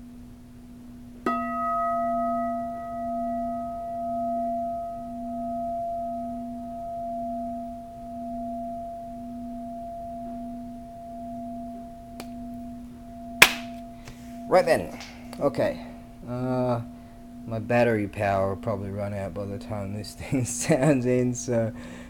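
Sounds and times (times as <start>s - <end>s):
bronze bell ringing: 9.7s - 20.0s.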